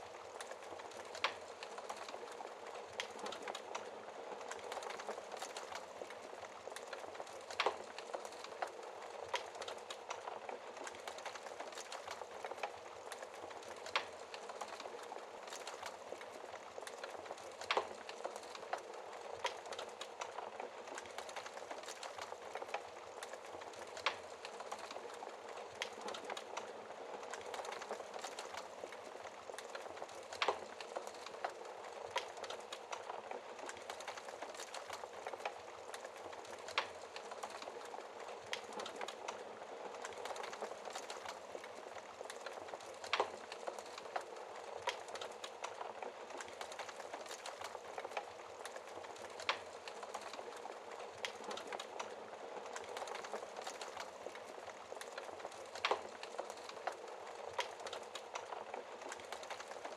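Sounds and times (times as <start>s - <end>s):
wood fire crackling: 0.0s - 59.9s
fire popping: 0.1s - 59.9s.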